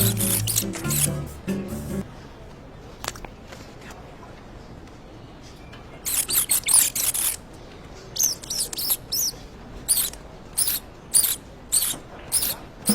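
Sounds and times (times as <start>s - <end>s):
small animal squeaking: 0.0s - 1.1s, 6.1s - 7.4s, 8.2s - 12.9s.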